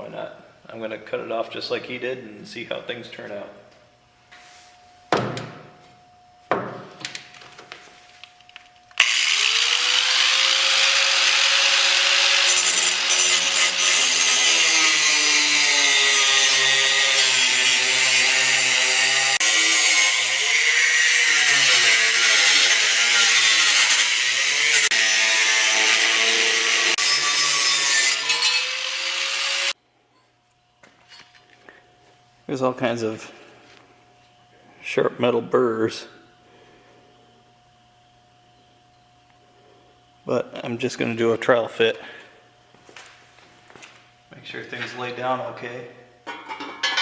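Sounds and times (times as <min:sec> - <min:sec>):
knocks: 0:05.1 - 0:05.8
cut-off wheel cutting steel: 0:09.0 - 0:29.8.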